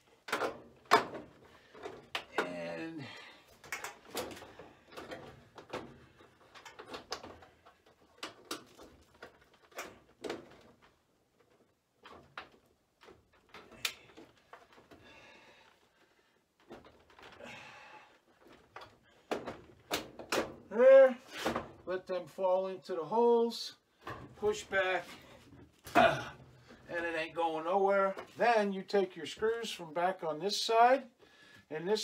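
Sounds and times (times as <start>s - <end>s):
hands handling washer panels: 0.1s - 2.6s, 18.4s - 21.8s.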